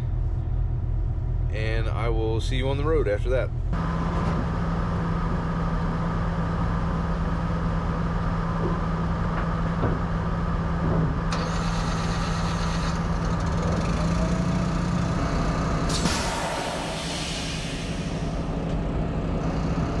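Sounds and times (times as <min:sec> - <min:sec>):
diesel truck engine running: 0:00.0 - 0:20.0
hiss: 0:15.9 - 0:18.7.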